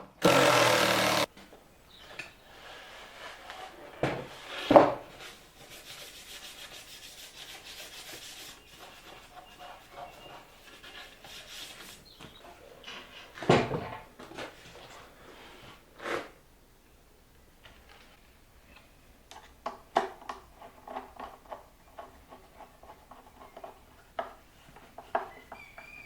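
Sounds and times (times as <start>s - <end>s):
loud wooden knocks: 0.2s - 1.3s
wooden boards rubbing together: 0.2s - 1.3s.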